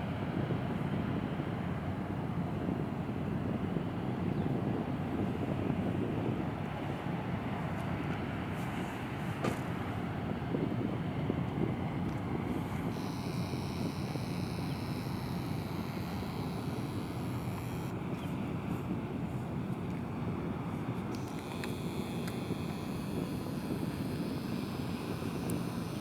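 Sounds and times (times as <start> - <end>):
click: 21.1 - 26.0.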